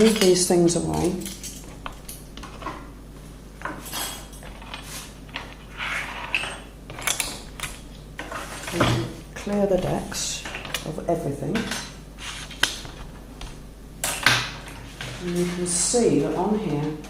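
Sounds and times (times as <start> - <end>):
small tools clinking on tray: 0.0 - 2.6.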